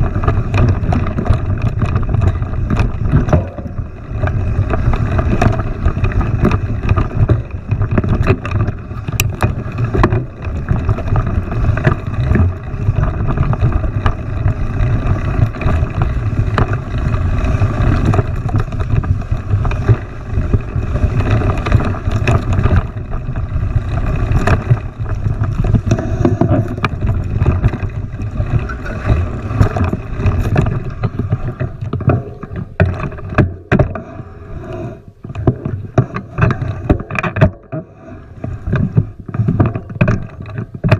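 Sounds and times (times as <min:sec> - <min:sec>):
wind buffeting microphone: 0:00.0 - 0:37.4
low rumble: 0:10.2 - 0:39.2.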